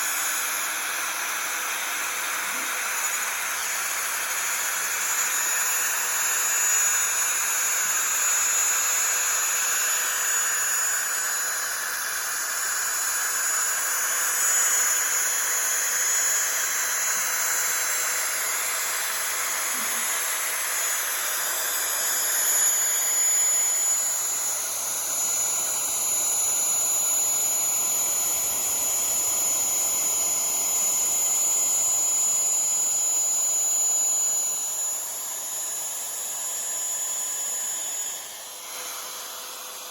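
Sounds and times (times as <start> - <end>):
router spindle high whine: 0.0 - 39.9
hiss of metal cutting: 1.8 - 15.2, 17.1 - 35.0.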